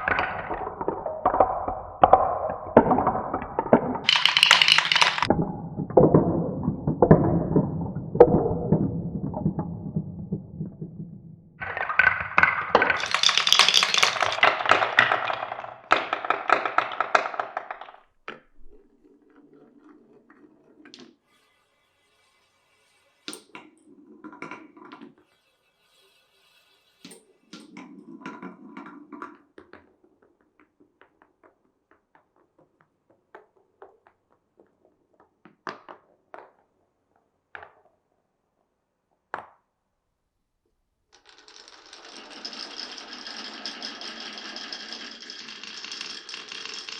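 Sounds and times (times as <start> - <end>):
marbles knocking on wood pieces: 0.0 - 21.1, 27.0 - 36.8, 41.2 - 46.9
marbles rolling on wooden track: 0.0 - 36.7, 41.1 - 46.9
glass marbles clattering: 0.1 - 5.4, 11.6 - 18.8, 41.2 - 46.9.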